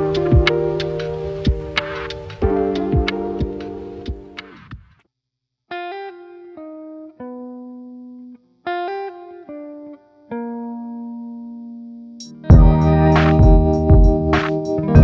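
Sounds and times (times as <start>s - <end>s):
plucked guitar notes: 0.0s - 4.4s, 8.7s - 15.0s.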